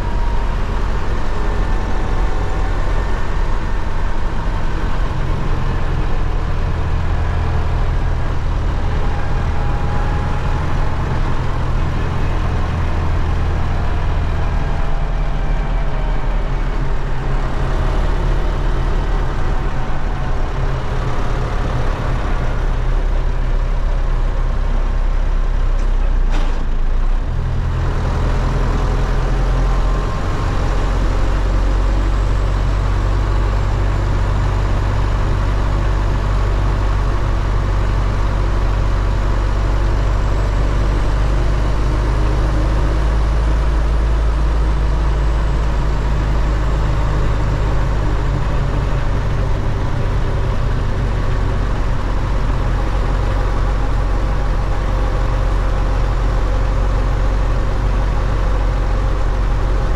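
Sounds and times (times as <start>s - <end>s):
tractor diesel engine running: 0.0s - 59.9s.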